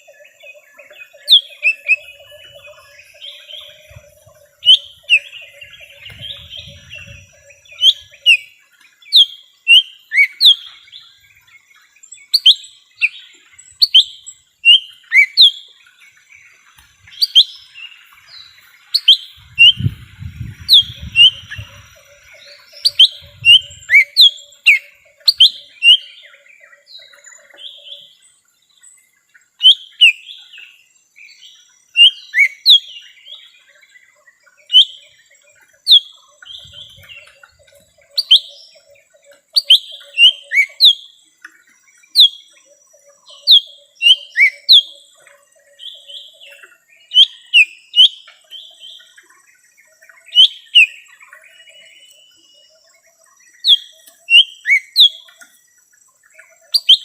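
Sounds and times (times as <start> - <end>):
high whistled bird notes: 1.2 - 8.5, 12.2 - 15.6, 17.1 - 26.2, 35.8 - 38.6, 39.6 - 41.1, 53.6 - 55.3, 56.7 - 57.0.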